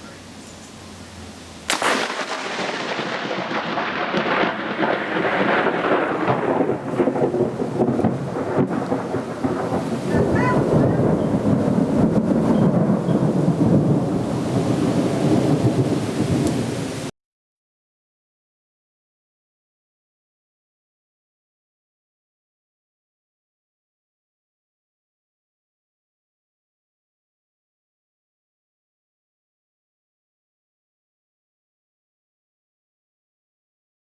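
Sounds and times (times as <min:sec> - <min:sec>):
rain falling: 0:00.0 - 0:17.1
thunder crack and rumble: 0:01.7 - 0:17.1.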